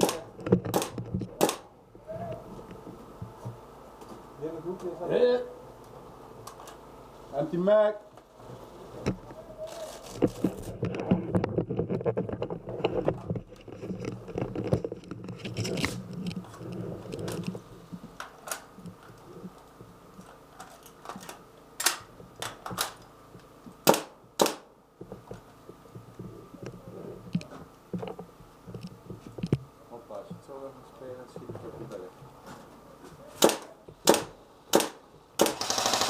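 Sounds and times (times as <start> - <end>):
airsoft gun shots: 0.0 - 1.7, 23.8 - 24.7, 33.4 - 36.0
airsoft gun handling clatter: 18.2 - 23.1.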